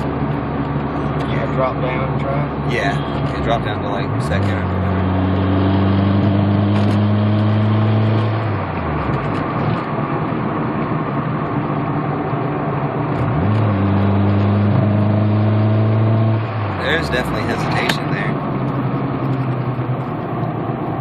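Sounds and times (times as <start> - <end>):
car engine pulling hard: 0.0 - 21.0
man speaking: 1.2 - 5.0, 16.8 - 18.4.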